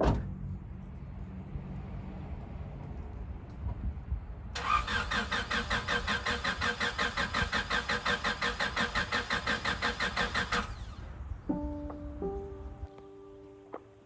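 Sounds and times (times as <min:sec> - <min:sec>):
starter motor cranking engine: 0:04.6 - 0:10.9.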